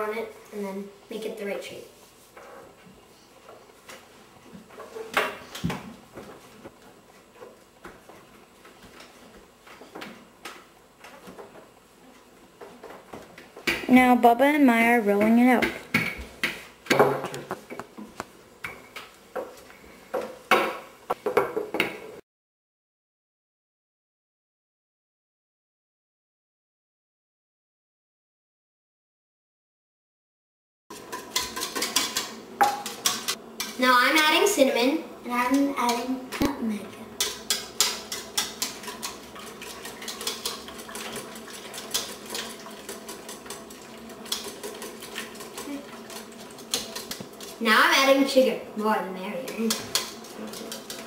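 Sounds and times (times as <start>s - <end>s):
utensils and dishes clinking: 30.9s - 33.7s, 49.5s - 51.0s.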